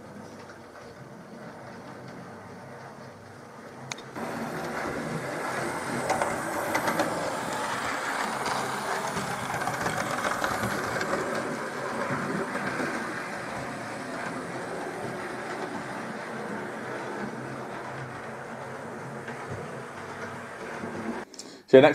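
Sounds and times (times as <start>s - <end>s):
model train motor whirring: 3.9s - 21.2s.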